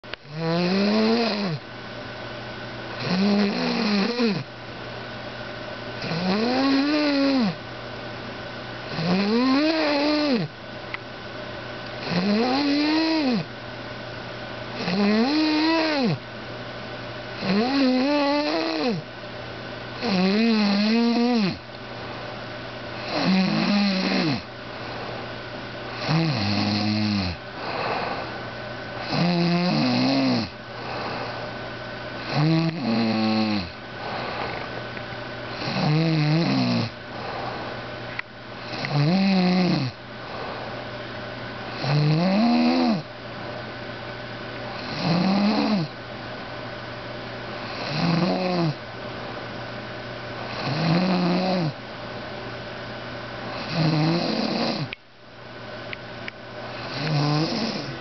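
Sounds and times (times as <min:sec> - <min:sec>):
loud snoring: 0:00.2 - 0:01.6, 0:03.0 - 0:04.5, 0:06.0 - 0:07.6, 0:08.9 - 0:10.5, 0:12.0 - 0:13.5, 0:14.8 - 0:16.2, 0:17.4 - 0:19.1, 0:20.0 - 0:21.6, 0:23.0 - 0:25.2, 0:25.9 - 0:28.3, 0:29.0 - 0:31.4, 0:32.2 - 0:34.7, 0:35.5 - 0:37.6, 0:38.6 - 0:40.6, 0:41.7 - 0:43.1, 0:44.8 - 0:46.0, 0:47.7 - 0:48.8, 0:50.5 - 0:51.8, 0:53.5 - 0:55.0, 0:56.7 - 0:58.0.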